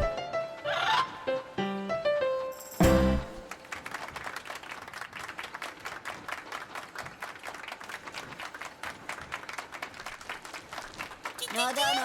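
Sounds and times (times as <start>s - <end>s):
many hands clapping: 2.9s - 12.0s.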